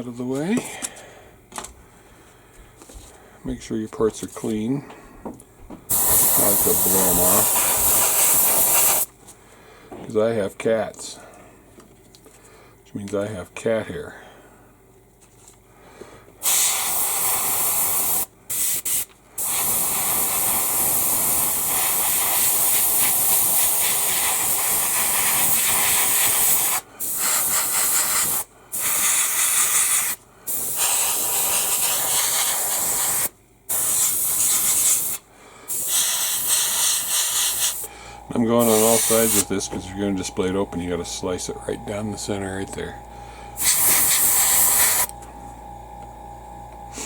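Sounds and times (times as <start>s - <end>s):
airbrush compressed air hiss: 5.9s - 9.1s, 16.4s - 42.2s, 43.2s - 45.2s.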